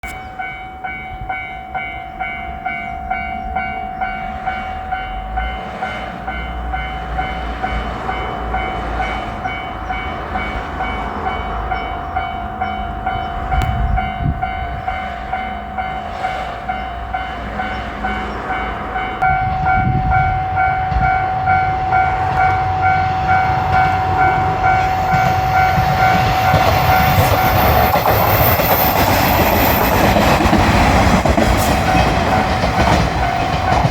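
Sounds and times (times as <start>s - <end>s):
railroad crossing alarm ringing: 0.0s - 33.9s
train rumbling past: 0.2s - 33.9s.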